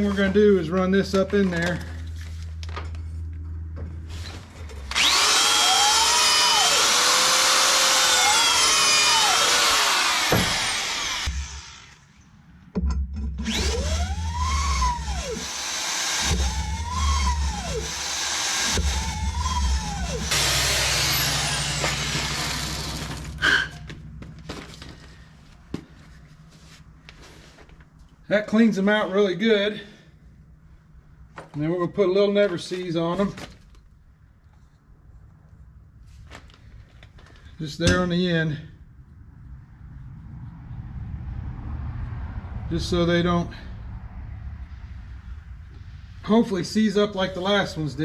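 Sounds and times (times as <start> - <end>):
electric drill whining: 4.8 - 12.1, 13.4 - 24.0.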